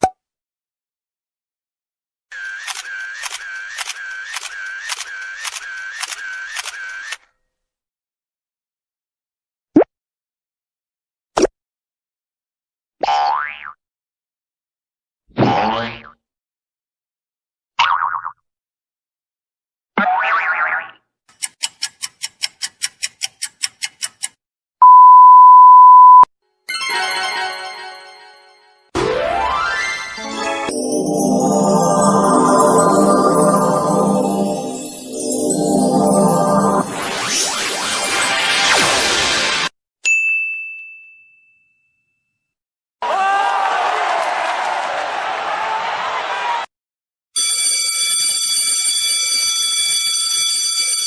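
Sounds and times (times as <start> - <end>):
camera shutter clicks: 2.4 - 7.2
censor bleep: 24.8 - 26.3.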